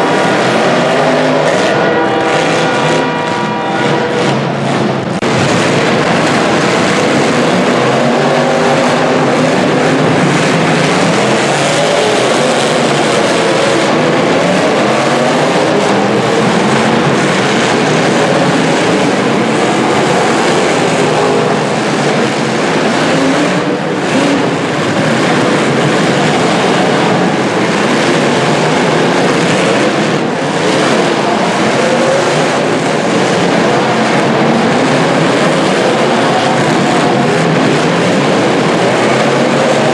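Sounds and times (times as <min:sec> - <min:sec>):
car engines revving: 0:00.0 - 0:39.9.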